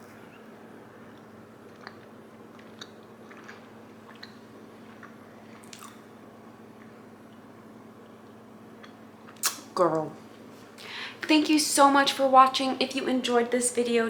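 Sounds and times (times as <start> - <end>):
steady low hum: 0.0 - 14.0
chewing crunches and clicks: 1.1 - 6.1.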